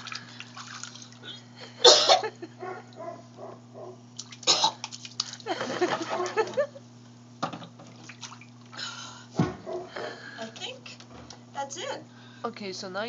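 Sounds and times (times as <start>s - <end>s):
water splashing and sloshing: 0.0s - 1.5s, 4.1s - 6.6s, 7.6s - 8.7s
steady low hum: 0.0s - 13.0s.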